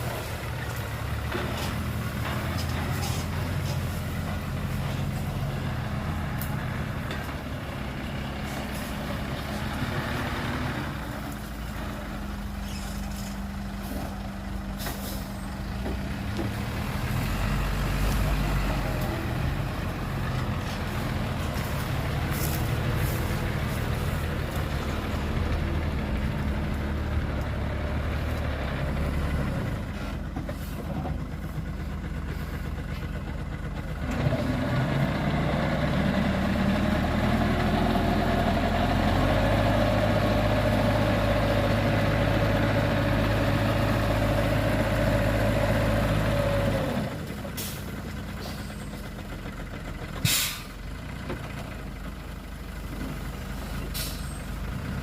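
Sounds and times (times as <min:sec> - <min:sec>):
diesel truck engines droning: 0:00.0 - 0:55.0
brief hisses: 0:50.2 - 0:50.7.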